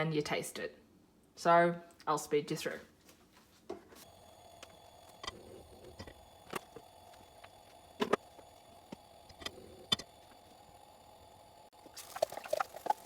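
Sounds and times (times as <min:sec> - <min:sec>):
steady hum: 0:04.0 - 0:13.0.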